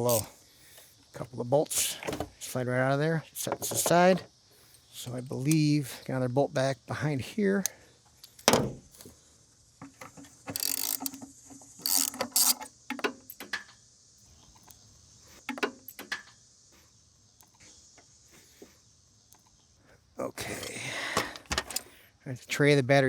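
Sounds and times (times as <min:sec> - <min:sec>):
ratchet wrench clicking: 0:00.0 - 0:00.3, 0:10.4 - 0:13.7, 0:15.5 - 0:16.3.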